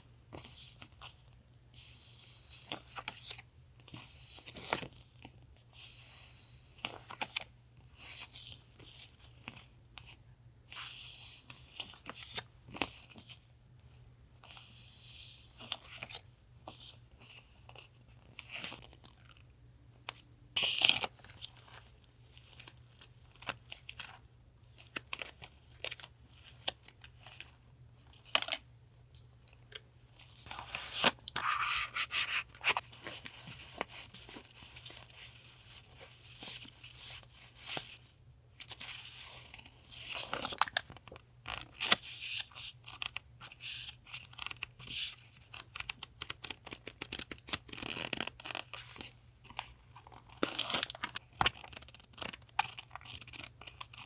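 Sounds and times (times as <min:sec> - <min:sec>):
paper rustling and tearing: 0:30.5 - 0:35.2.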